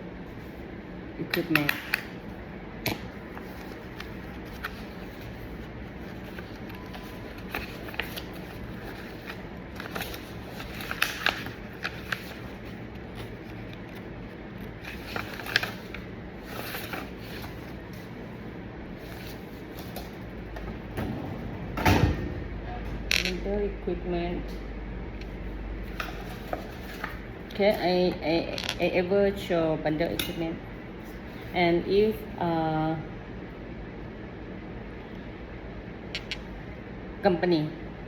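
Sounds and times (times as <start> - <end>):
low background hum: 0.0 - 38.0
paper sheets rustling: 3.3 - 18.2.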